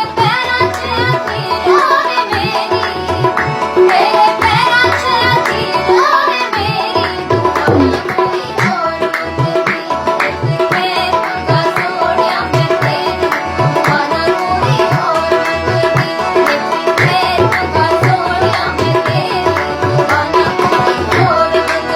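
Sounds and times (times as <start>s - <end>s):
tabla playing: 0.0s - 21.9s
woman singing: 0.0s - 21.9s.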